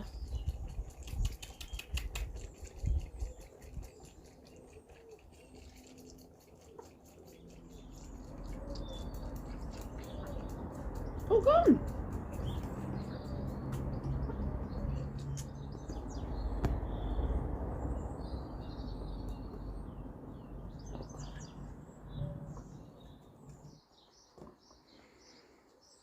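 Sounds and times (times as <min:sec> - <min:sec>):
small birds chirping: 0:00.0 - 0:26.0
low rumble: 0:07.7 - 0:23.8.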